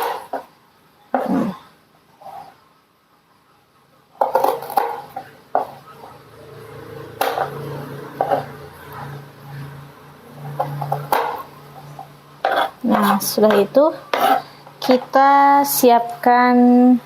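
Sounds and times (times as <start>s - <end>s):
kitchen utensils and dishes clattering: 0.0s - 0.5s, 4.2s - 6.2s, 7.0s - 9.8s, 10.4s - 15.2s.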